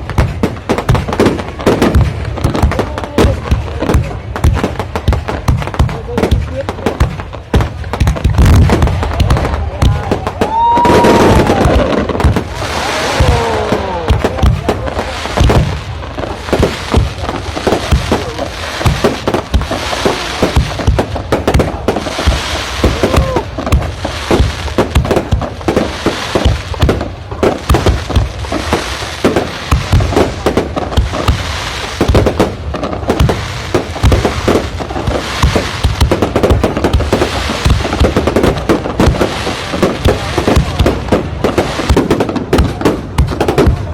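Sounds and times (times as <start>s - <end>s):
fireworks bangs and crackling: 0.0s - 43.9s
descending firework whistles: 9.0s - 14.4s.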